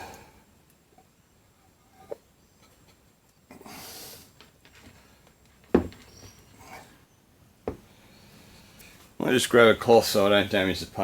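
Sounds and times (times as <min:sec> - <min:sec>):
short breathy hiss: 0:03.6 - 0:04.4
faint handling noises: 0:04.3 - 0:06.6
sharp knocks on workbench: 0:05.7 - 0:06.0, 0:07.7 - 0:07.9.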